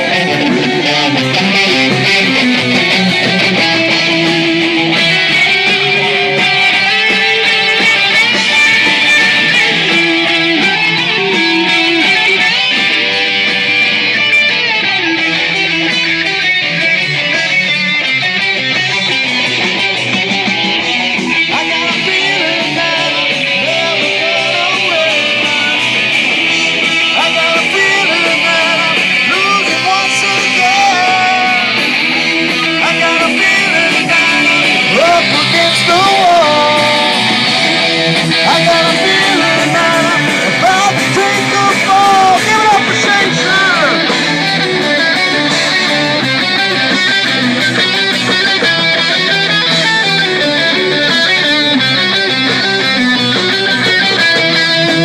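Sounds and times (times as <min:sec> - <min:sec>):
rock band playing: 0:00.0 - 0:55.0.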